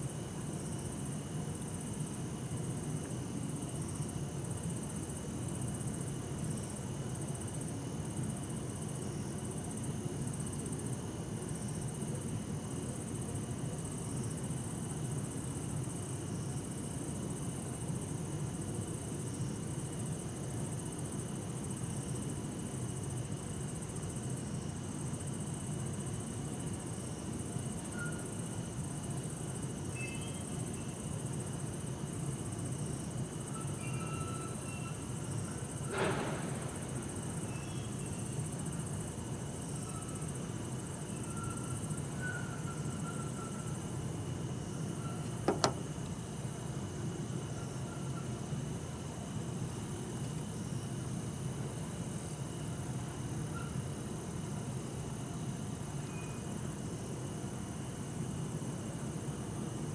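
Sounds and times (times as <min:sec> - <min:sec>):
crickets trilling: 0:00.0 - 0:59.9
distant traffic hum: 0:44.9 - 0:46.2.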